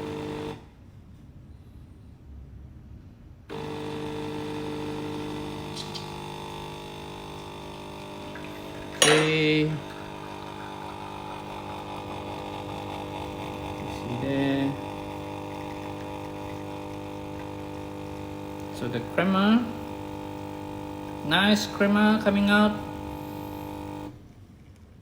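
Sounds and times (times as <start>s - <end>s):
espresso machine pump humming: 0.0s - 0.6s, 3.5s - 24.2s
sharp click: 5.7s - 6.2s.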